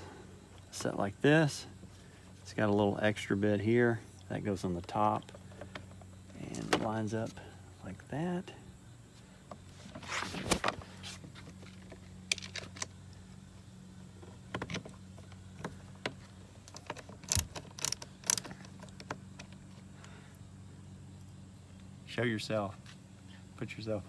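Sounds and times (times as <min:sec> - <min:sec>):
steady low hum: 0:00.0 - 0:24.0
plastic parts clicking and scraping: 0:09.8 - 0:13.0, 0:14.5 - 0:19.8.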